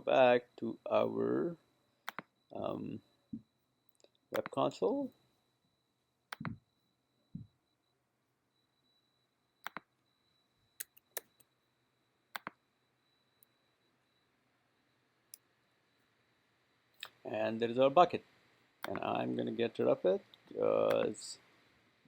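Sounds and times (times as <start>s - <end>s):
computer mouse clicks: 2.0s - 2.3s, 3.9s - 4.6s, 6.3s - 6.6s, 9.6s - 9.9s, 10.8s - 11.5s, 12.3s - 12.6s.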